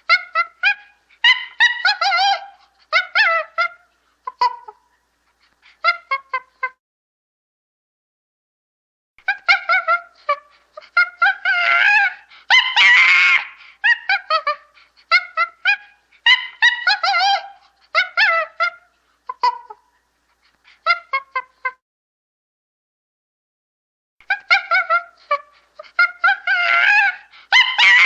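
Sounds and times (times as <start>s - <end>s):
chimpanzee hooting and screaming: 0.1s - 3.8s, 9.3s - 18.8s, 24.2s - 28.0s.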